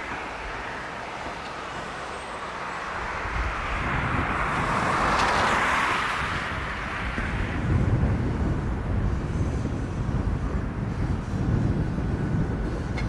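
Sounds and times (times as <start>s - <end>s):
wind buffeting microphone: 2.9s - 13.0s.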